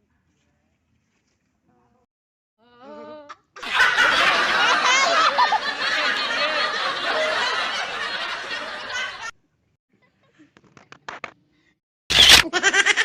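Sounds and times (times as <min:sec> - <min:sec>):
several people laughing loudly: 0:03.6 - 0:09.4.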